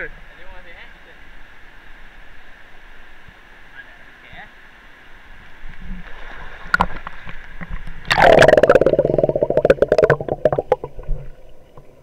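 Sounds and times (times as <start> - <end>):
water gurgling and bubbling: 7.7 - 12.0.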